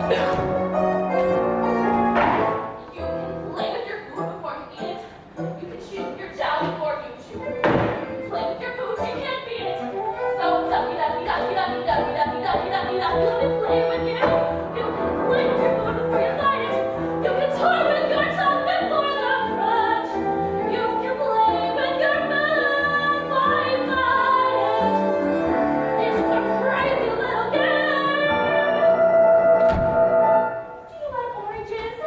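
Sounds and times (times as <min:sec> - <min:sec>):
instrumental accompaniment: 0:00.0 - 0:32.0.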